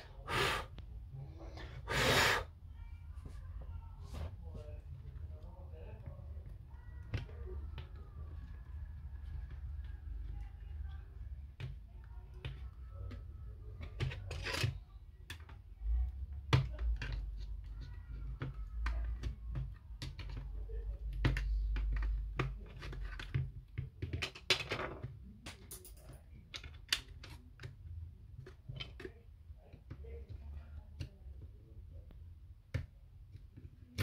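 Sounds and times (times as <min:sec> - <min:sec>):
small tools clicking and clinking: 0:25.5 - 0:27.8.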